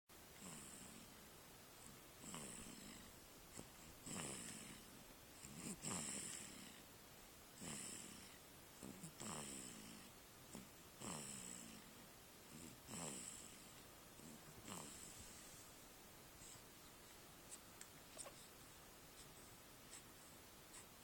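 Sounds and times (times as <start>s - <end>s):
baby snoring: 0.4s - 1.2s, 1.8s - 6.9s, 7.6s - 15.7s.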